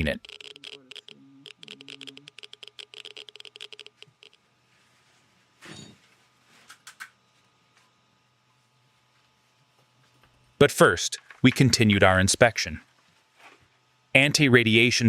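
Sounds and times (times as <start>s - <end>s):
geiger counter clicking: 0.0s - 4.4s
low electronic tone: 0.0s - 4.4s.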